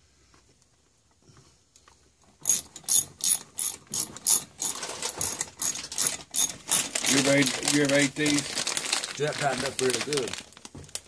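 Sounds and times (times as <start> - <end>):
ratchet wrench clicking: 2.4 - 7.3.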